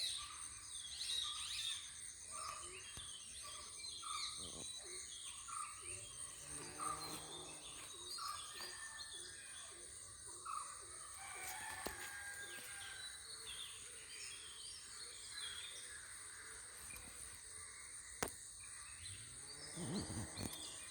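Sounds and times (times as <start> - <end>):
small birds chirping: 0.0 - 20.9.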